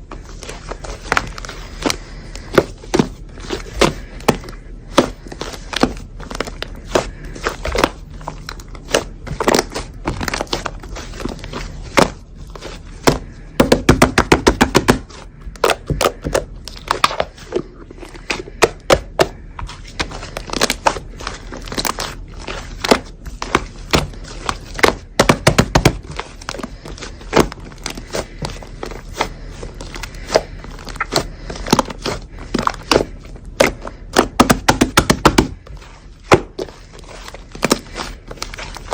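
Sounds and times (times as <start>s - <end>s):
slime squeezed crackling and popping: 18.2s - 38.9s.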